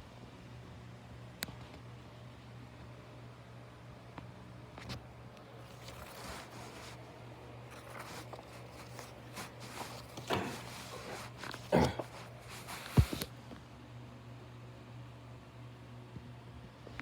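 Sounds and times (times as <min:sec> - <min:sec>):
soft rustling of booklet: 0:05.6 - 0:13.3.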